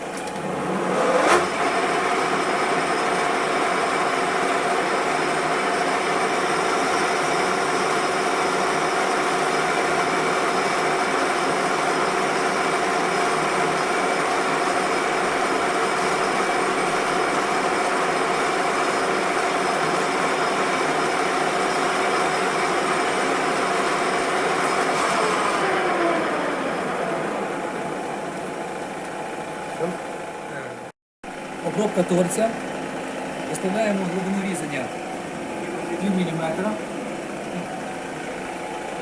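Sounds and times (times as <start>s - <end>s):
metal lathe whining: 0.0s - 30.4s.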